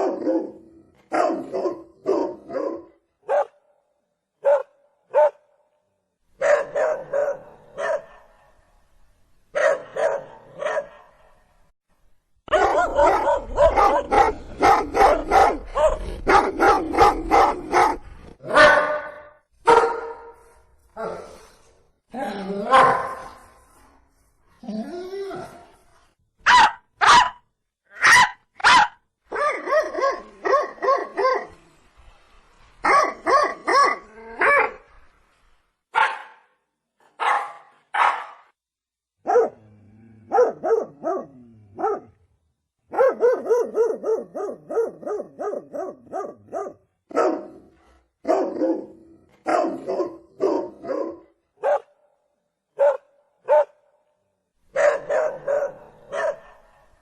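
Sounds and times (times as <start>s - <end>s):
dog barking: 0.0s - 3.7s, 4.4s - 5.5s, 6.4s - 8.6s, 9.6s - 11.3s, 12.5s - 20.4s, 22.7s - 23.4s, 26.4s - 27.4s, 28.0s - 31.5s, 32.8s - 34.8s, 35.9s - 36.5s, 37.2s - 38.5s, 39.2s - 39.6s, 40.3s - 42.2s, 42.9s - 52.0s, 52.8s - 53.9s, 54.7s - 56.9s.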